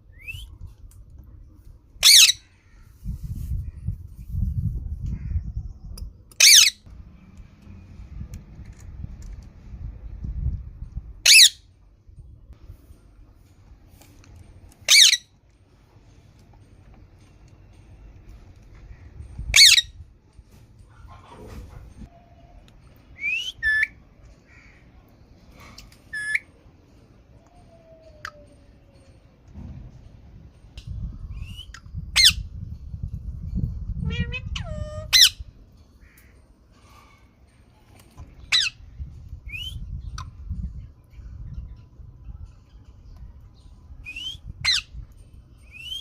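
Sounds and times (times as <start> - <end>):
parrot squawks: 2.0 - 2.4, 6.4 - 6.8, 11.2 - 11.6, 14.9 - 15.2, 19.5 - 19.9, 34.0 - 35.4, 38.5 - 38.8
parrot whistling: 23.2 - 24.0.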